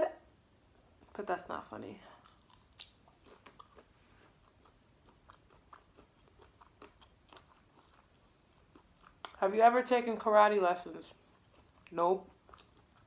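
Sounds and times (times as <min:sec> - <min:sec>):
faint chewing of food: 0:02.0 - 0:09.4, 0:11.1 - 0:13.0.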